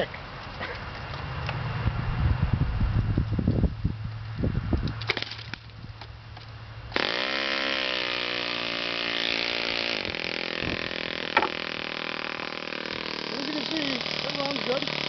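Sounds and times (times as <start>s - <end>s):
model engine running high-pitched: 7.0s - 15.0s
engine knocks and pops: 11.3s - 11.6s.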